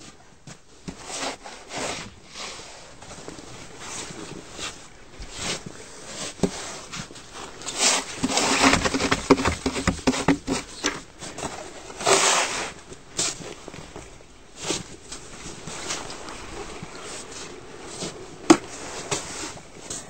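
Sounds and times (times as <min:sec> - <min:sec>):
shovel scraping snow: 0:07.7 - 0:11.0, 0:11.9 - 0:13.4.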